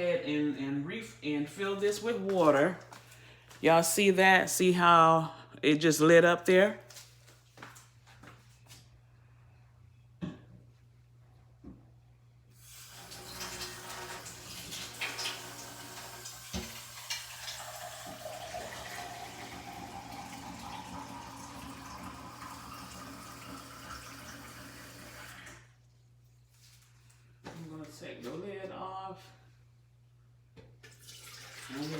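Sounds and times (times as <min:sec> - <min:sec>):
tap water running into container: 0:12.6 - 0:25.6, 0:30.8 - 0:31.9.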